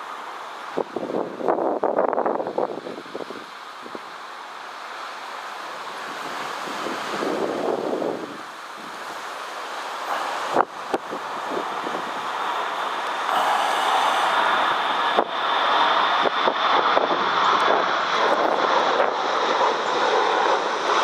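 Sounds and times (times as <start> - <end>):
airplane engines at high power: 0.0 - 21.0
wind buffeting microphone: 0.7 - 4.0, 6.0 - 21.0.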